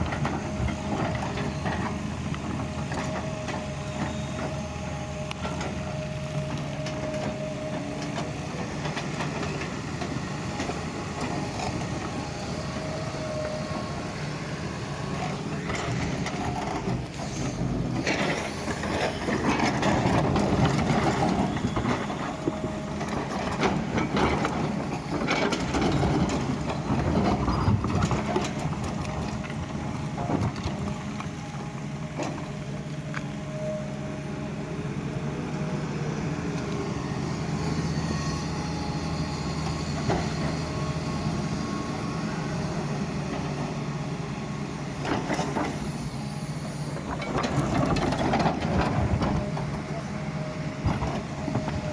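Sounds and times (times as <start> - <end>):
excavator diesel engine running: 0.0 - 51.9
digging scrapes and metallic clanks: 15.1 - 31.2.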